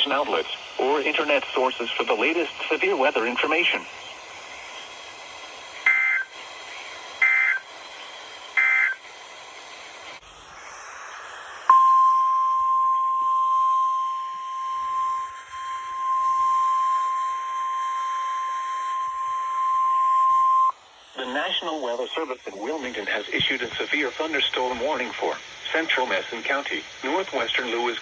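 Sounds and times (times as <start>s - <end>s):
steady warning alarm tone: 5.8s - 6.4s, 7.2s - 7.7s, 8.5s - 9.0s, 11.6s - 20.8s
warbling digital data bursts: 5.8s - 6.4s, 7.2s - 7.7s, 8.6s - 9.0s.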